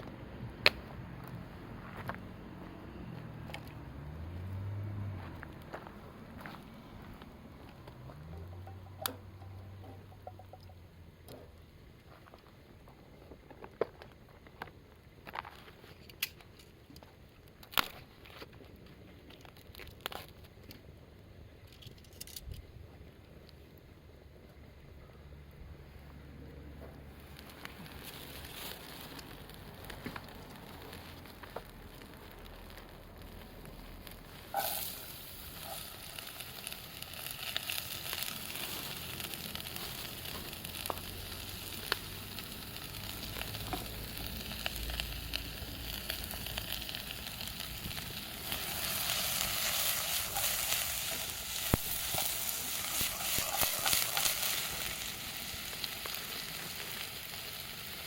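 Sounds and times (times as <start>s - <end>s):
pops and crackles: 0.0s - 1.4s, 3.4s - 3.8s, 5.2s - 20.9s, 26.7s - 58.0s
food sizzling in hot oil: 27.2s - 58.0s.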